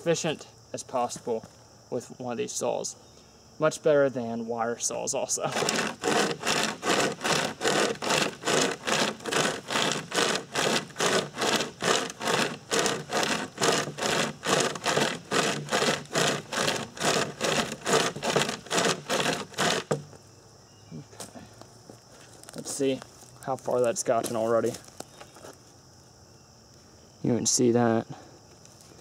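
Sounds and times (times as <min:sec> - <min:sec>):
hand chainsaw rasping through log: 0:05.4 - 0:20.2.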